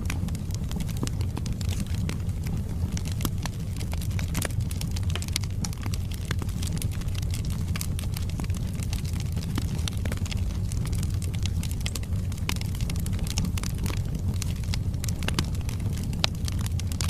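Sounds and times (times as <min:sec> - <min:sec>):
wood fire crackling: 0:00.0 - 0:17.0.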